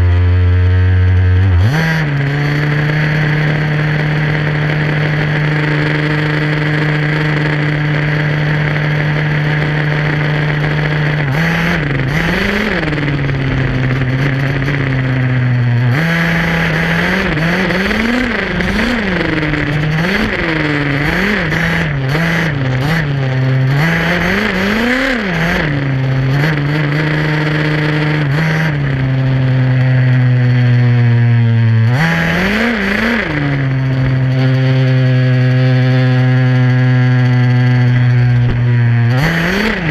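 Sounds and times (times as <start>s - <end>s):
two-stroke engine revving: 0.0s - 39.9s.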